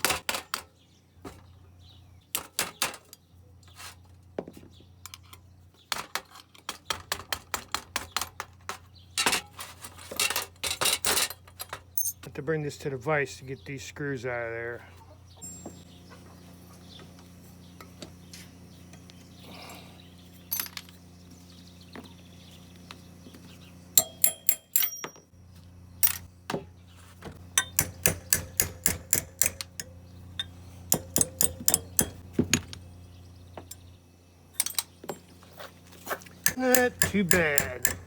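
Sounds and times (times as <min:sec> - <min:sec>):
steady low hum: 0:12.0 - 0:38.0
hand tools striking metal: 0:24.0 - 0:25.4, 0:26.0 - 0:26.7, 0:27.4 - 0:32.8, 0:34.6 - 0:35.3, 0:36.4 - 0:38.0.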